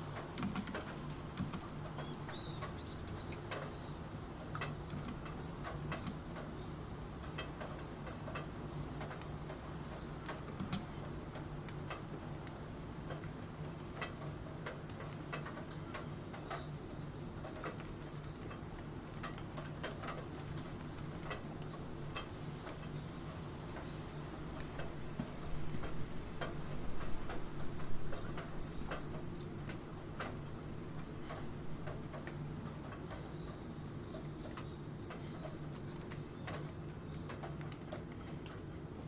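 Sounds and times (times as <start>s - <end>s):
keyboard typing: 0.2s - 2.0s, 4.6s - 6.2s, 10.3s - 11.0s.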